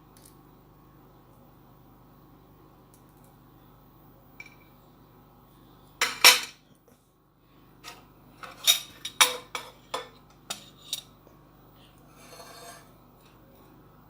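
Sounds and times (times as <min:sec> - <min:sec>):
metal utensils clinking on plate: 0:07.9 - 0:11.1.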